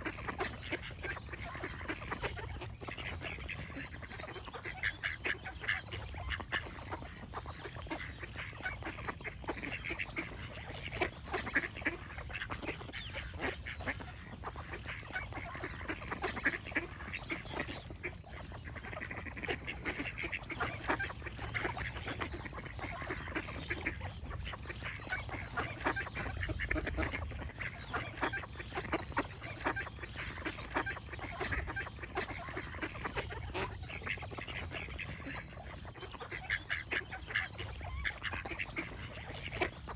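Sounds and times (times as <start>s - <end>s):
flock of ducks quacking: 0.0s - 39.9s.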